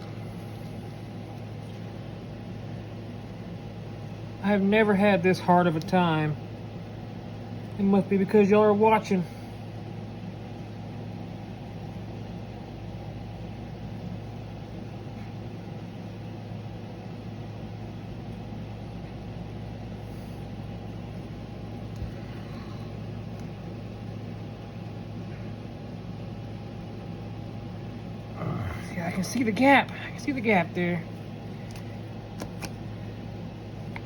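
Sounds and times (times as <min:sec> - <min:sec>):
machine hum: 0:00.0 - 0:34.0.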